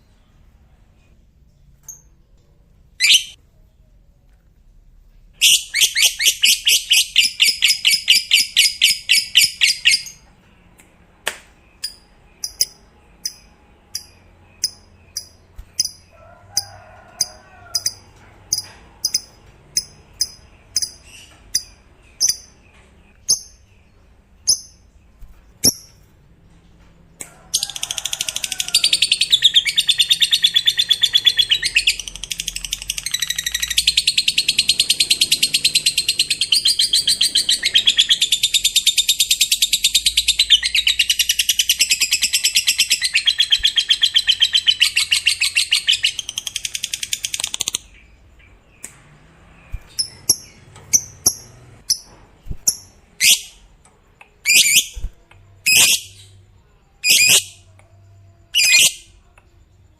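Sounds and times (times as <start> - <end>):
lovebird chattering trill: 3.0 - 3.4, 58.6 - 59.1.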